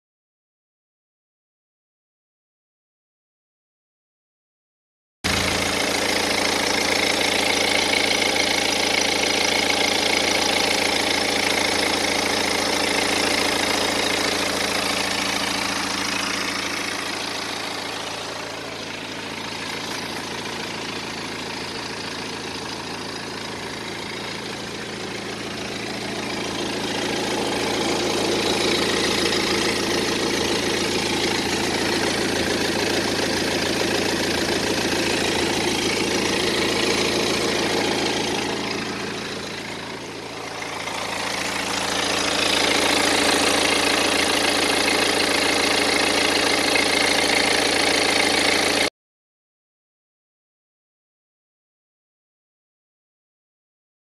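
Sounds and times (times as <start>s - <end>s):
diesel engine idling with rattle: 5.3s - 48.9s.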